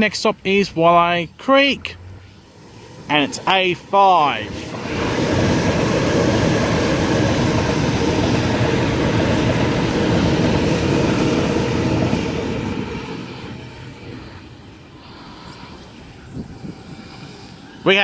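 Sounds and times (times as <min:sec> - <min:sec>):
electric train passing: 0:00.0 - 0:18.0.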